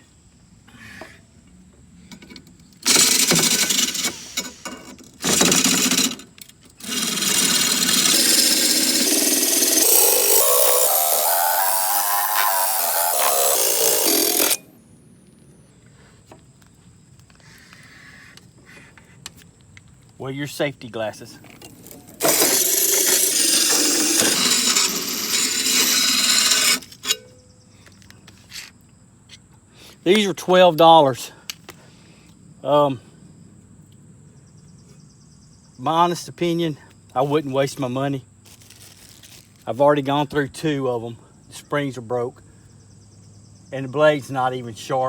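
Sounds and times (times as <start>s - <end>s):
drill grinding metal blade: 2.8s - 14.7s, 21.4s - 27.3s.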